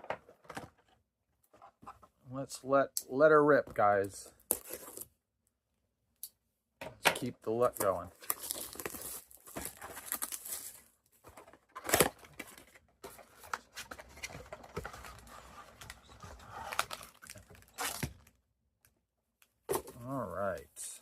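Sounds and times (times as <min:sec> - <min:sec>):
card pack wrapper ripping: 0:08.2 - 0:10.8.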